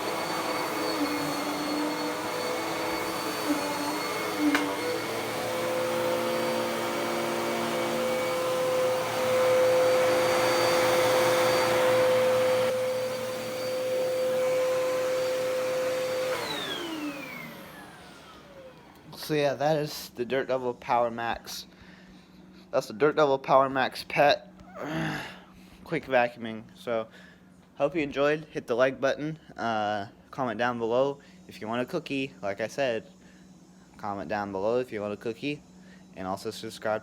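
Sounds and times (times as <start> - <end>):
vacuum cleaner running: 0.0 - 21.6, 24.7 - 25.3.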